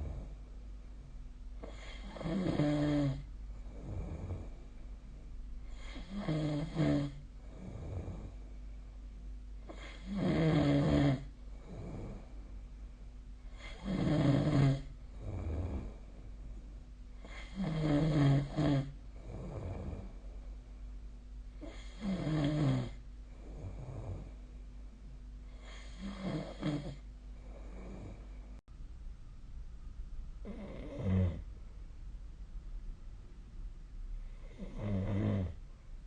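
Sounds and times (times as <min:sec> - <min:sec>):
steady low hum: 0:00.0 - 0:36.0
person snoring: 0:01.6 - 0:04.6, 0:05.7 - 0:08.4, 0:09.6 - 0:12.4, 0:13.5 - 0:16.2, 0:17.2 - 0:20.3, 0:21.6 - 0:24.4, 0:25.5 - 0:28.5, 0:30.4 - 0:31.4, 0:34.4 - 0:35.6.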